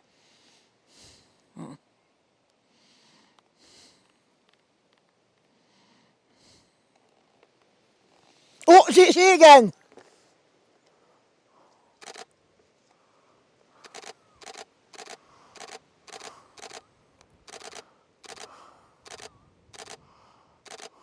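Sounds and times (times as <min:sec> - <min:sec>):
camera shutter clicks: 0:12.0 - 0:12.2, 0:13.8 - 0:16.8, 0:20.7 - 0:20.9.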